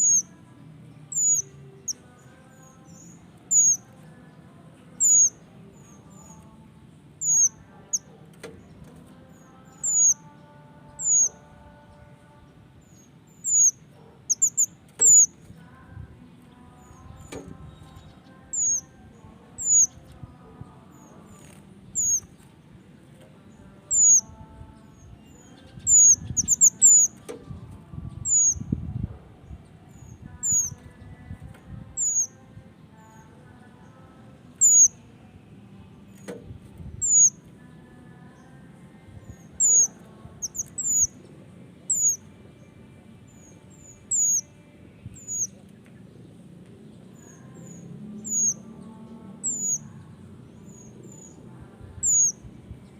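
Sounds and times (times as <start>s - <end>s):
bird calling with high thin notes: 3.0s - 3.8s, 7.2s - 8.1s, 34.6s - 35.0s.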